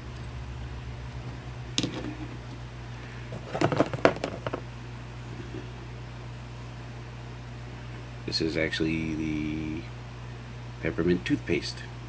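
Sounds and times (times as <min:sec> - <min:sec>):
steady low hum: 0:00.0 - 0:12.0
clicks and rustling of packaging: 0:03.3 - 0:04.6.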